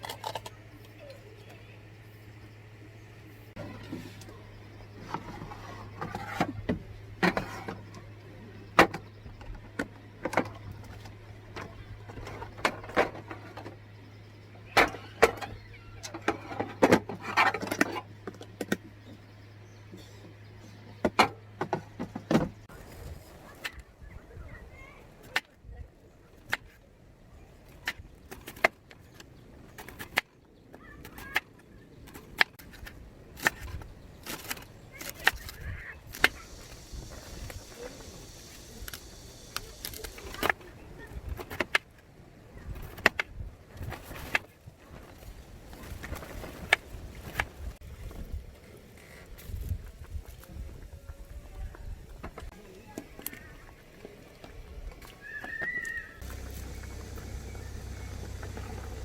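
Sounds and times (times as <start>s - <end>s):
steady low hum: 35.7s - 44.0s, 56.2s - 59.0s.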